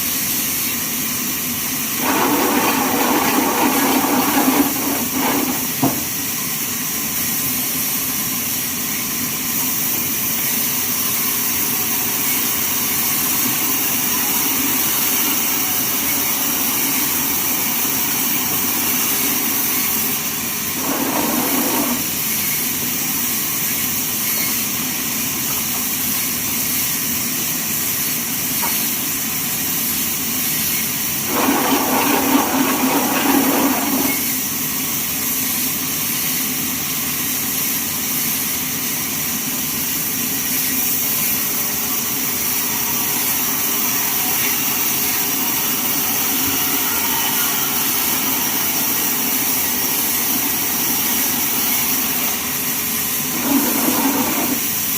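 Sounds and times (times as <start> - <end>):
band saw whirring: 1.9 - 6.1, 20.2 - 22.4, 31.2 - 34.4, 53.1 - 54.9.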